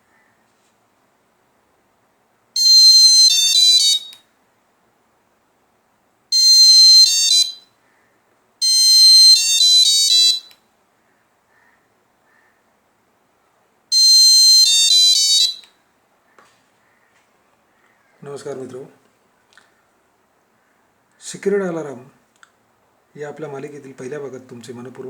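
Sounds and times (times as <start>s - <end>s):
electronic alarm buzzer beeping: 2.6s - 4.2s, 6.3s - 7.6s, 8.6s - 10.6s, 13.9s - 15.7s.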